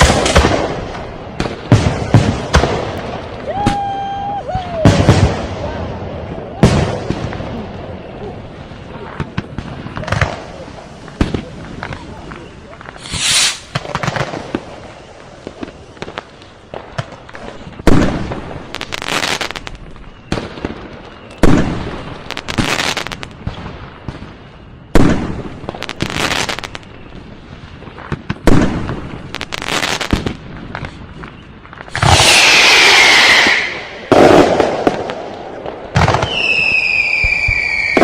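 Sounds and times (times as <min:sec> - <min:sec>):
firecracker bangs: 0:00.0 - 0:03.8, 0:09.2 - 0:14.8, 0:21.4 - 0:26.5, 0:28.0 - 0:30.9, 0:31.8 - 0:38.0.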